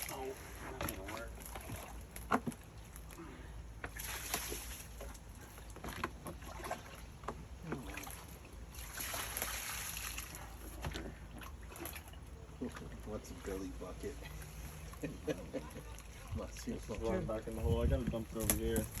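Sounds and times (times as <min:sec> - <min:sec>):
water sloshing and splashing: 0:00.0 - 0:19.0
water pouring: 0:06.4 - 0:13.6.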